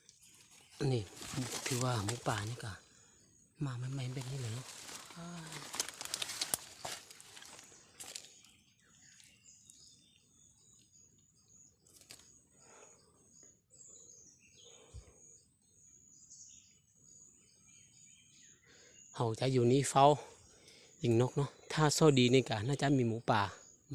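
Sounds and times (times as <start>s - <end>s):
birds chirping: 0.0s - 23.9s
rustling: 0.3s - 2.6s, 4.0s - 8.3s.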